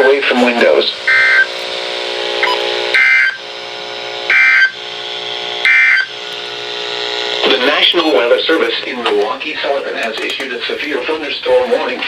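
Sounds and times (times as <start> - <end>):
steady low hum: 0.0 - 12.0
shrill warbling tone bursts: 0.2 - 0.9.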